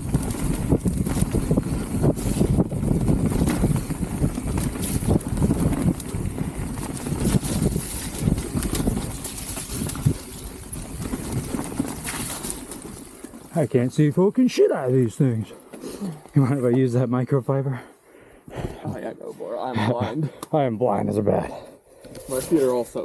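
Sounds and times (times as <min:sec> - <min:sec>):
wind buffeting microphone: 0:00.0 - 0:13.4
bike knocking and rattling: 0:00.0 - 0:17.0
tyres rolling over dirt: 0:00.0 - 0:17.7.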